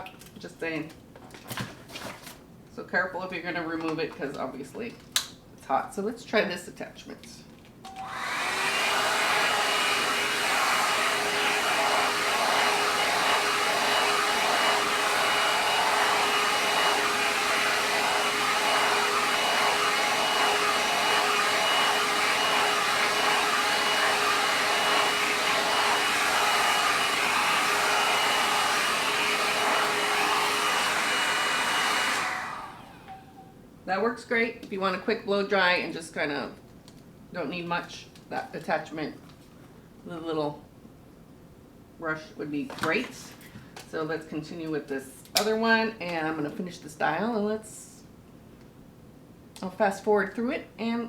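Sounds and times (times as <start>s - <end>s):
hair dryer brush blowing: 8.0s - 33.3s.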